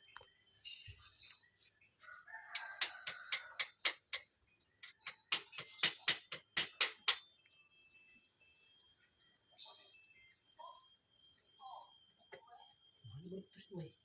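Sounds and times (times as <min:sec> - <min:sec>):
sharp knocks: 0:02.6 - 0:04.2, 0:04.8 - 0:07.2.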